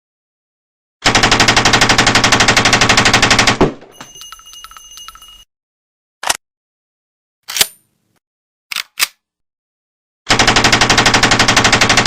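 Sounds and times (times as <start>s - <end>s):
machine pistol full-auto burst: 10.3s - 12.0s.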